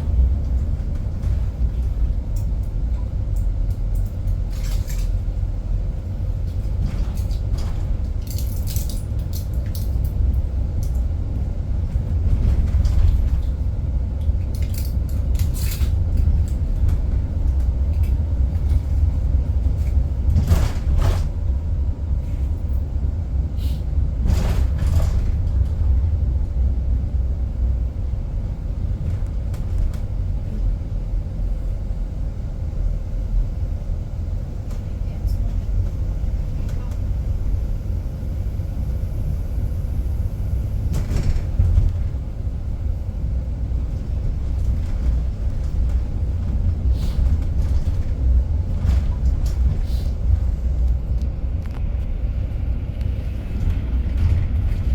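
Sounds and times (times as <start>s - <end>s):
bus cabin road rumble: 0.0s - 54.9s
short knocks and rattles: 19.7s - 21.4s.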